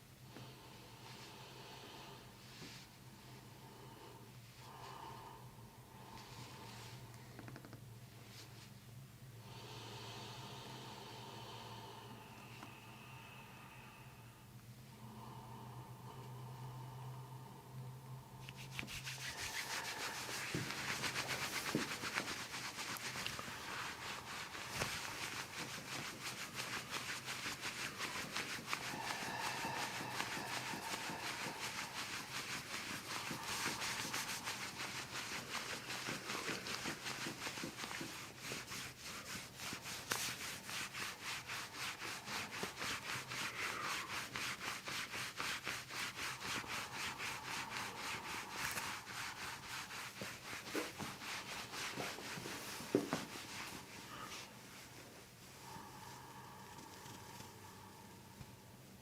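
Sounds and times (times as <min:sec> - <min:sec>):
hands rubbing in massage: 0:18.4 - 0:57.7.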